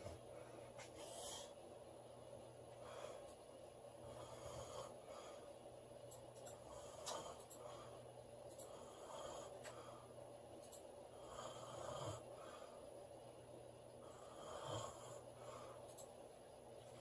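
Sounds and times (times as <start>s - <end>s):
woman snoring: 11.2s - 12.3s, 14.1s - 15.3s.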